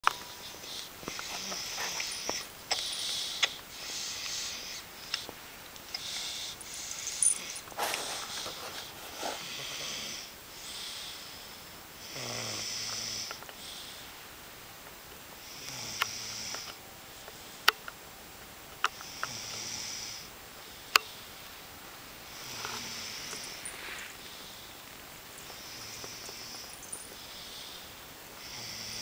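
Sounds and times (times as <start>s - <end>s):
person snoring: 6.0s - 11.2s, 12.0s - 13.3s, 28.4s - 29.0s.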